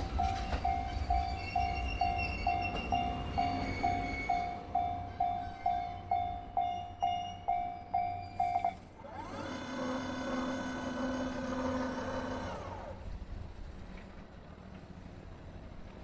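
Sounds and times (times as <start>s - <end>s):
level-crossing warning bell: 0.0s - 9.0s.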